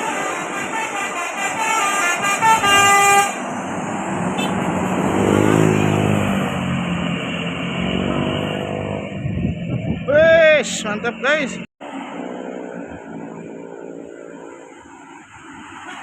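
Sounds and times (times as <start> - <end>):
bus horn playing a tune: 0.0 - 3.5, 4.4 - 4.7
traffic noise: 0.0 - 16.0
vehicle engine rising and falling: 3.4 - 15.9.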